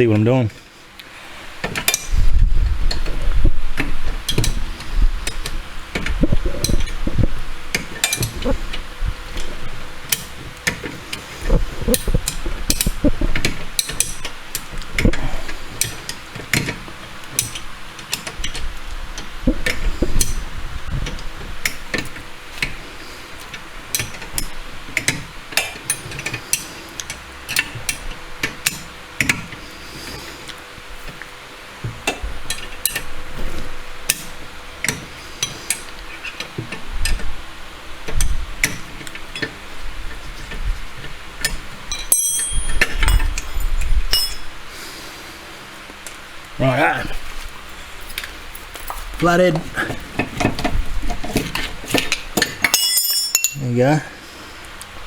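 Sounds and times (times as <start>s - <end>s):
metal tool clicks and clinks: 41.9s - 44.5s, 52.6s - 53.7s.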